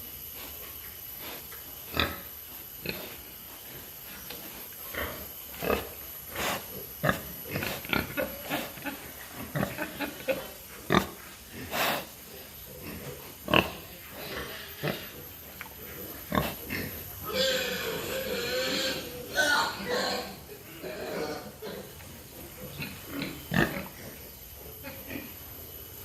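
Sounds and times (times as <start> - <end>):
pigs grunting and squealing: 4.9 - 25.4.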